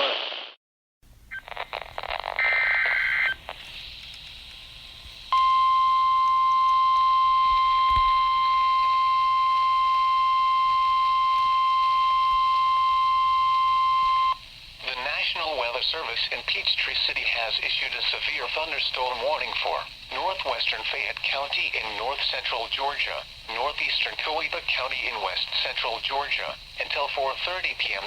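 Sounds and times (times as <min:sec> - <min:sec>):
faint receiver hiss: 0:01.1 - 0:09.7, 0:13.5 - 0:28.0
steady single-pitch warning tone: 0:05.3 - 0:14.5.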